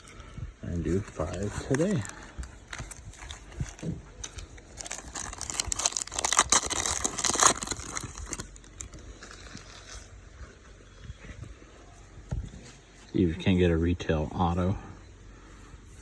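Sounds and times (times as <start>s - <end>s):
wrapper tearing and crinkling: 0.9s - 10.1s.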